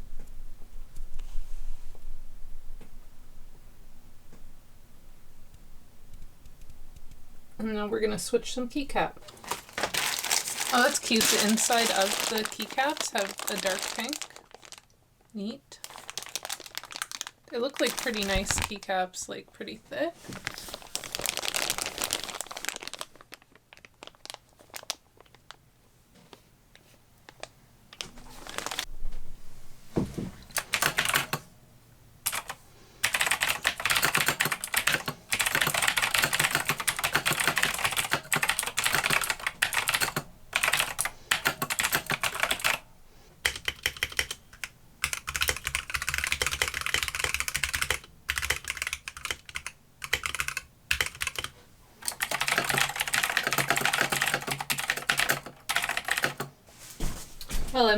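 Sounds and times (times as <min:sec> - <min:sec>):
deep thud under typing: 0:30.0 - 0:30.5
typing on mechanical keyboard: 0:30.5 - 0:31.4, 0:32.3 - 0:42.8, 0:43.4 - 0:56.5.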